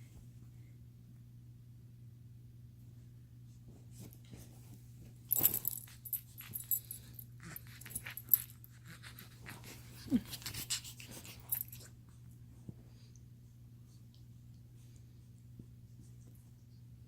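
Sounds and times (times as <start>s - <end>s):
steady low hum: 0.0s - 17.0s
scratchy rustling and crackling: 3.6s - 12.0s.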